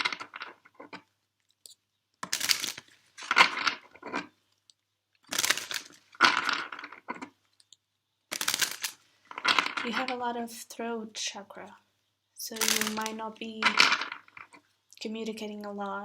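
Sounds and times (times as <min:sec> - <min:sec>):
cards being shuffled: 0:01.5 - 0:04.3, 0:05.3 - 0:07.3, 0:08.3 - 0:09.9, 0:12.6 - 0:14.2.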